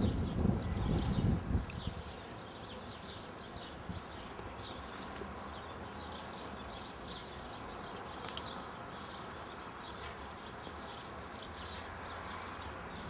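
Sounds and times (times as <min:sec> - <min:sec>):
small birds chirping: 0:00.0 - 0:13.0
sharp click: 0:08.2 - 0:08.5.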